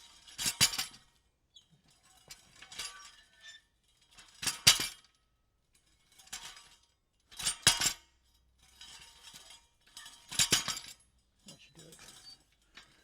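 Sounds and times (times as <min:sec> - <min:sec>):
metal pieces clinking and jangling: 0:11.4 - 0:12.6.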